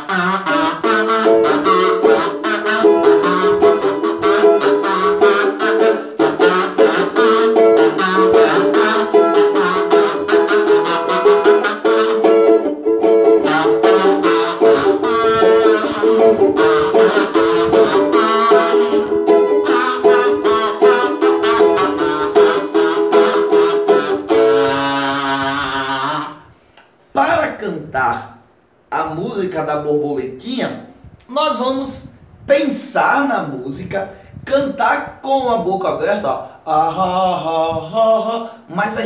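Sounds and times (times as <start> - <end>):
strummed ukulele: 0.0 - 25.8
kazoo buzzing melody: 0.0 - 26.8.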